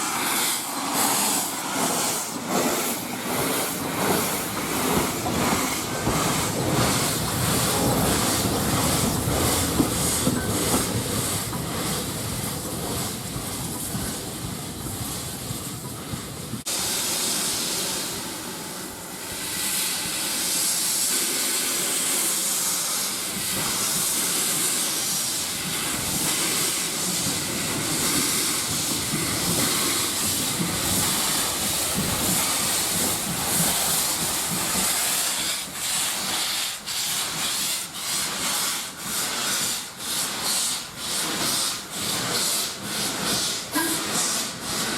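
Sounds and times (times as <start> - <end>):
steam locomotive hissing: 0.0 - 44.9.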